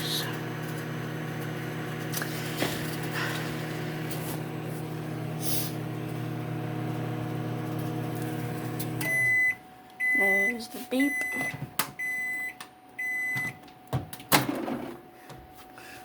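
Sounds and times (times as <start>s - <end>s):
microwave oven humming: 0.0s - 16.0s
high-pitched microwave beep: 9.0s - 13.6s.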